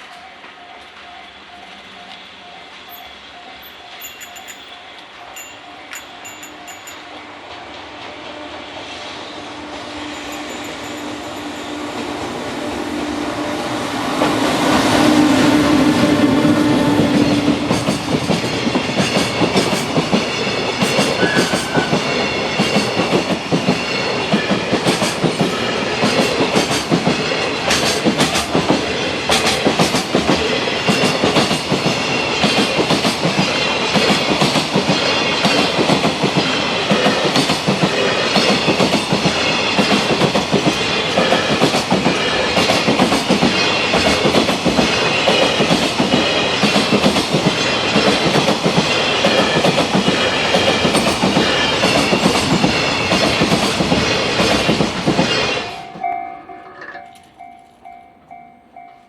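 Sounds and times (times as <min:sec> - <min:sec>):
electric locomotive hum: 0:00.0 - 0:59.0
wagon wheels clacking over rail joints: 0:17.1 - 0:58.3.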